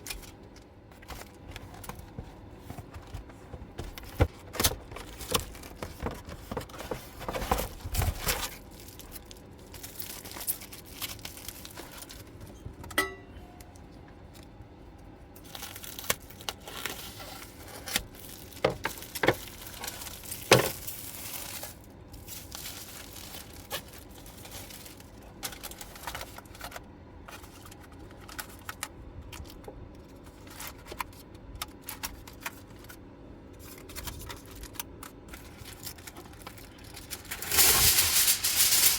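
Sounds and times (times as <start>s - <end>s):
paper or plastic tearing: 35.4s - 38.9s.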